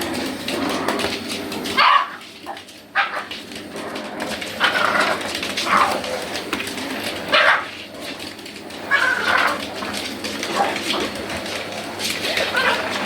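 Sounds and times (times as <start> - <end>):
vacuum cleaner hum: 0.0 - 13.0
dog barking and yapping: 1.7 - 2.3, 2.9 - 3.4, 5.6 - 6.0, 7.2 - 7.8, 8.9 - 9.6, 12.2 - 13.0.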